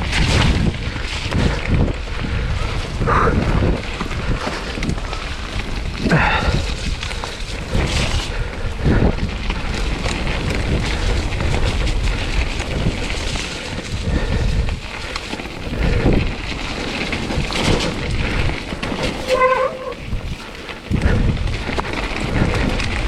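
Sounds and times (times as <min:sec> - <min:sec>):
mountain bike rattle and tyre noise: 0:00.0 - 0:23.0
wind buffeting microphone: 0:00.0 - 0:23.0
bike knocks and clatters: 0:06.7 - 0:14.0, 0:15.2 - 0:23.0.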